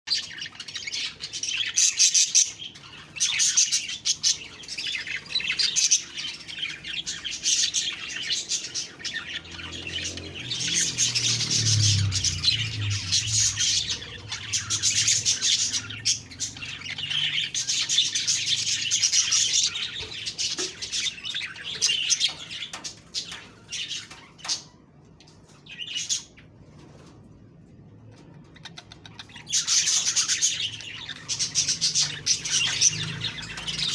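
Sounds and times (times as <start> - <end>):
budgerigars chirping and warbling: 0.1 - 33.9.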